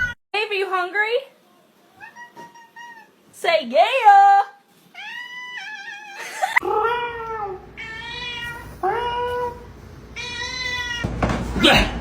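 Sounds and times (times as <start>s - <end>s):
cat meowing: 2.0s - 3.2s, 4.9s - 6.5s, 7.1s - 9.6s, 10.2s - 11.0s.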